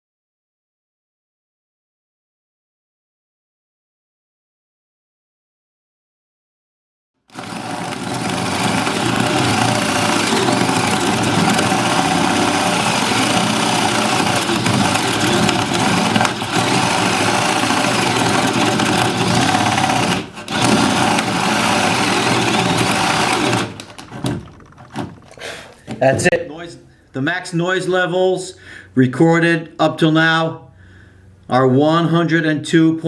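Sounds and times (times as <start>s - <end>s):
drill bit boring through wood: 7.3s - 27.0s
cordless drill motor whine: 7.3s - 27.1s.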